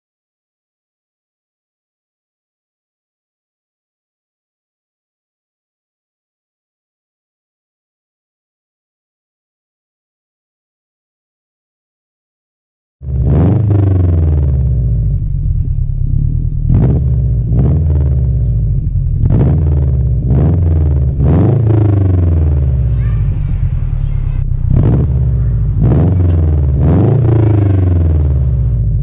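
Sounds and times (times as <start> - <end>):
car engine revving through gears: 13.0 - 29.0.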